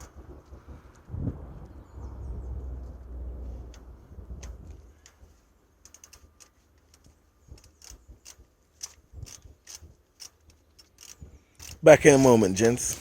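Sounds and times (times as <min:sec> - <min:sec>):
ratchet clicking: 0:05.8 - 0:11.9.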